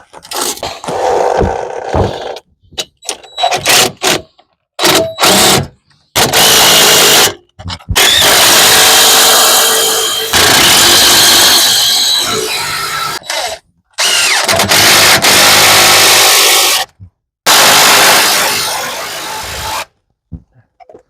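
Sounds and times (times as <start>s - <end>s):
impact wrench whining: 0.4s - 15.4s.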